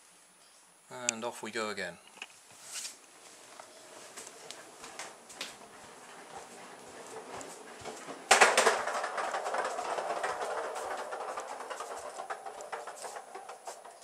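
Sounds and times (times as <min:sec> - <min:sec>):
toy car rattling on hard floor: 0:05.0 - 0:14.0
toy car clattering: 0:07.1 - 0:14.0.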